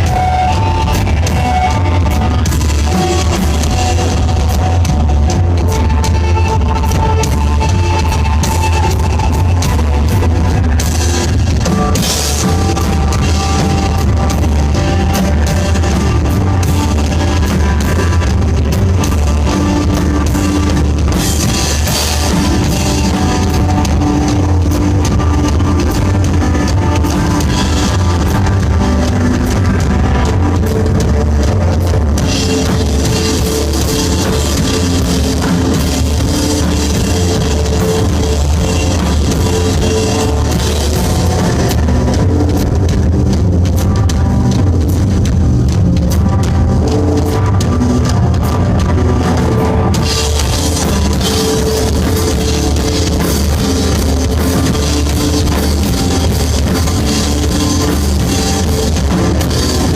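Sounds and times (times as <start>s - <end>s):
rock band playing: 0.0s - 59.9s.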